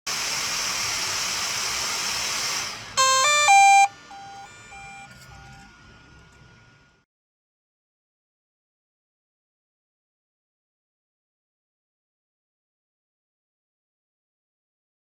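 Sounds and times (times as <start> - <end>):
rising electronic beeps with echo: 3.0 - 5.0.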